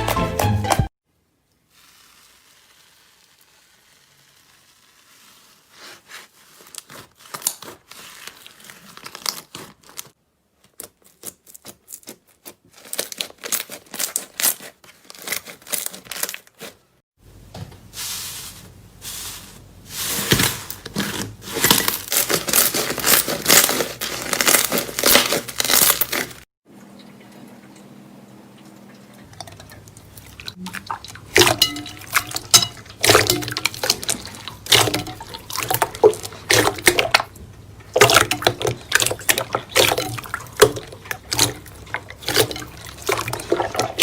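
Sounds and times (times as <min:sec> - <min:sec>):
slime crackling and popping: 0:22.0 - 0:26.4.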